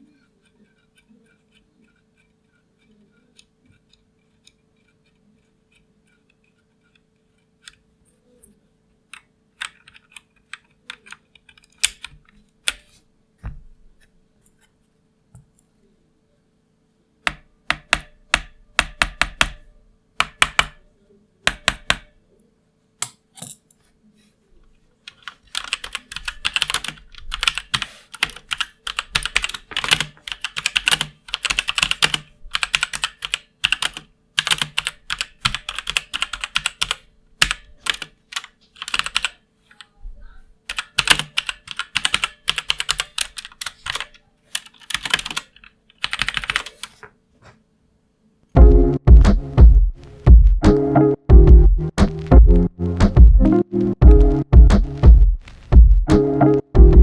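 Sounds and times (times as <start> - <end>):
typing on mechanical keyboard: 9.2 - 12.8, 17.3 - 19.6, 20.2 - 20.8, 21.5 - 22.1, 25.1 - 39.4, 40.7 - 47.0.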